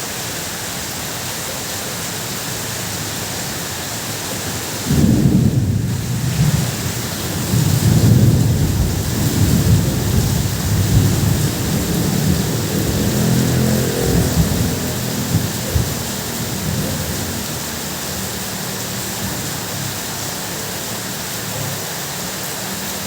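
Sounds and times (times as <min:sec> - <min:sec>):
heavy rain on a tin roof: 0:00.0 - 0:23.0
thunder rumbling: 0:04.8 - 0:18.4.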